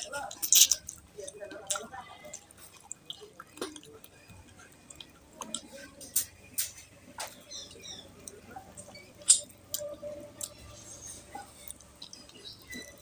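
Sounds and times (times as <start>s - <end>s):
wet eating mouth sounds: 0.2s - 5.9s, 9.2s - 13.0s.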